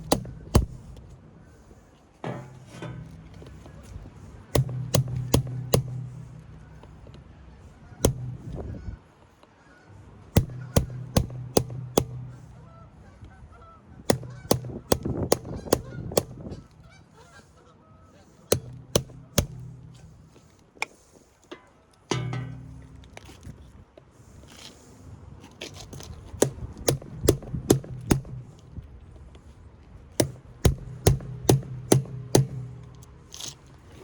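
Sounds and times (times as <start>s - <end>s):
tool striking metal parts: 0.0s - 1.0s, 2.2s - 7.2s, 10.4s - 12.5s, 14.1s - 16.5s, 18.5s - 20.4s, 21.5s - 23.5s, 26.4s - 28.6s, 30.2s - 33.5s
low droning hum: 0.0s - 9.0s, 10.0s - 17.1s, 18.5s - 20.6s, 22.1s - 23.9s, 26.4s - 34.0s.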